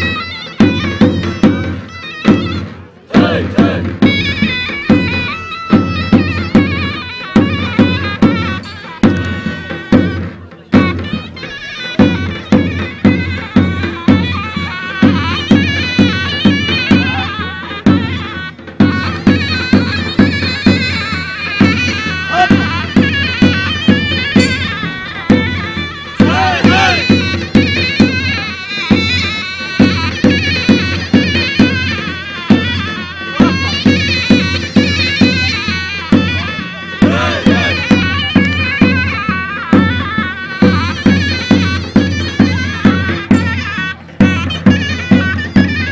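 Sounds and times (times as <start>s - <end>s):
reedy shawm melody: 0.0s - 45.9s
large bass drum beat: 3.1s - 6.8s, 26.2s - 28.2s, 37.0s - 38.9s.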